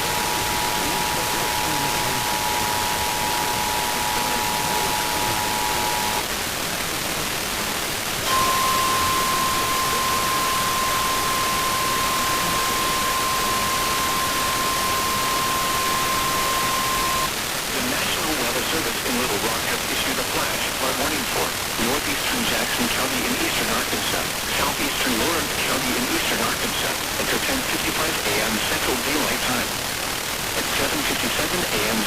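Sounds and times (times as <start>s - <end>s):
two-tone attention signal: 0.0s - 6.2s, 8.2s - 17.3s
steady warning alarm tone: 0.0s - 6.3s, 8.2s - 17.3s
radio hiss: 0.0s - 32.0s.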